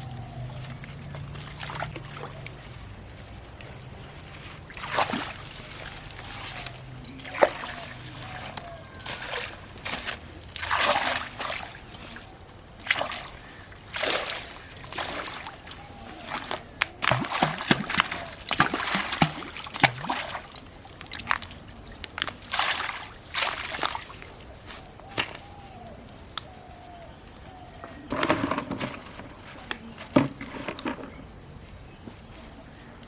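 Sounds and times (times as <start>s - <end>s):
water splashing: 0.0s - 25.9s.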